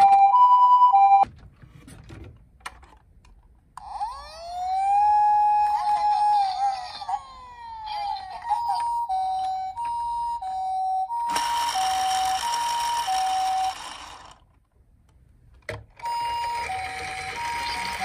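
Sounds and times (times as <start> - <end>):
toy two-tone siren: 3.8 - 6.8, 7.9 - 14.4, 16.0 - 18.0.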